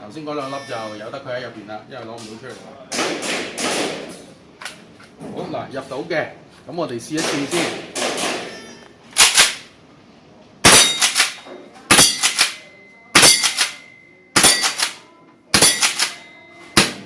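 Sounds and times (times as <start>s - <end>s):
airsoft shotgun shots: 9.2s - 9.6s, 10.6s - 12.6s, 13.2s - 13.8s, 14.4s - 15.0s, 15.6s - 16.2s.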